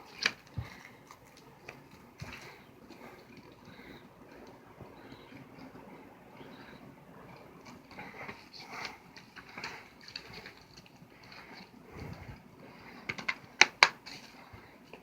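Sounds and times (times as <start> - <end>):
rustling and rubbing of packaging: 7.3 - 15.0.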